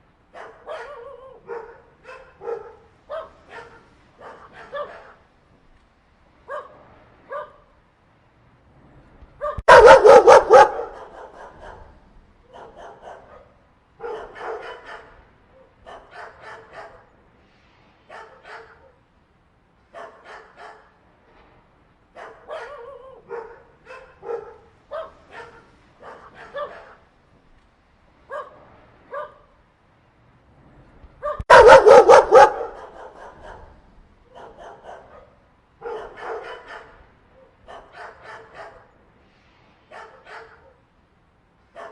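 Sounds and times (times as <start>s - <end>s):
dogs barking: 0.3s - 5.3s, 6.5s - 7.6s, 9.4s - 11.9s, 12.5s - 17.1s, 18.1s - 19.0s, 19.9s - 21.0s, 22.1s - 27.1s, 28.3s - 29.4s, 31.2s - 38.9s, 39.9s - 40.8s.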